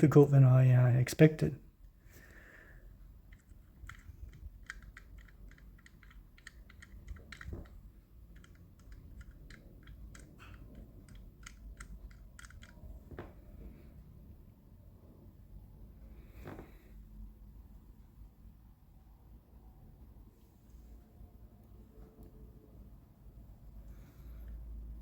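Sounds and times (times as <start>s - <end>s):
light clicks and taps: 3.2s - 13.8s.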